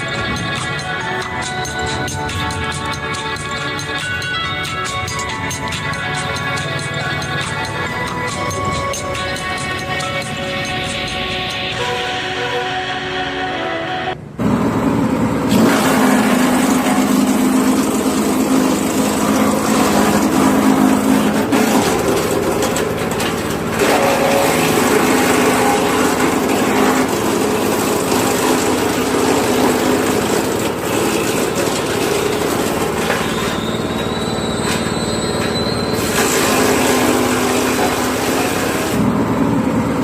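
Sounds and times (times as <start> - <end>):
wood chipper engine running hard: 14.3 - 40.0
dense shredding noise: 14.4 - 40.0.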